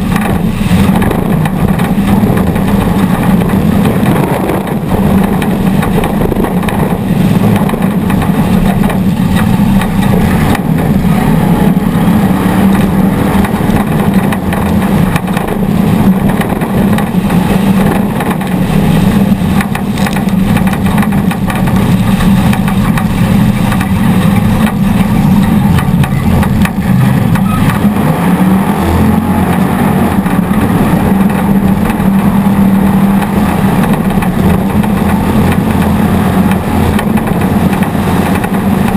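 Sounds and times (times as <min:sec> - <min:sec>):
truck engine running loud: 0:00.0 - 0:38.9.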